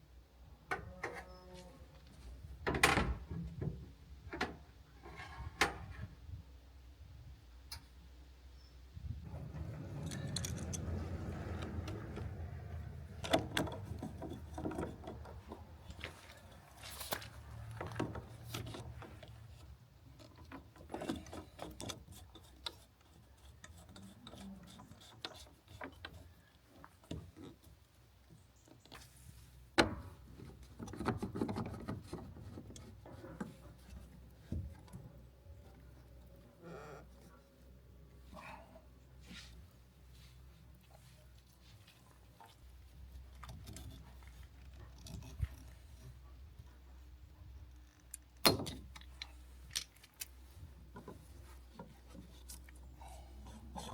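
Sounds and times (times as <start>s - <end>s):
scraping and rubbing: 9.2s - 19.4s.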